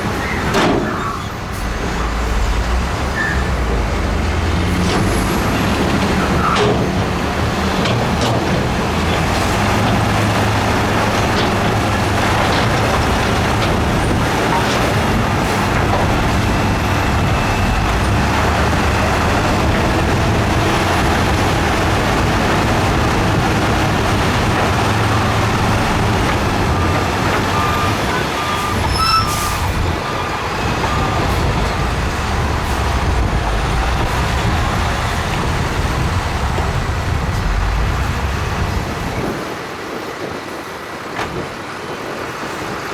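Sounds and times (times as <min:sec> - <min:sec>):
heavy diesel machinery running: 0:00.0 - 0:42.9
reversing alarm beeps: 0:24.9 - 0:33.2.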